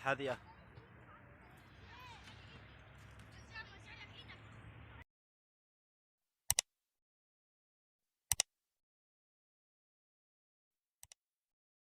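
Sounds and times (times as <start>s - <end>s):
sharp double clicks: 6.5s - 6.7s, 8.3s - 8.5s.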